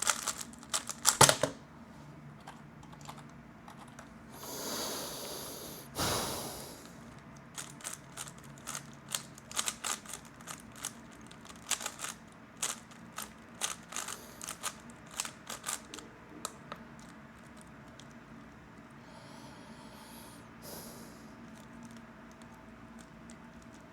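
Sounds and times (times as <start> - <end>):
puzzle cube clicking: 0.0 - 1.4, 7.6 - 16.0.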